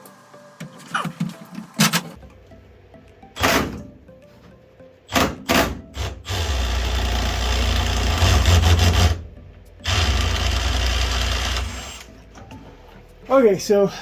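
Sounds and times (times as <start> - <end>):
power tool running: 5.1 - 12.1.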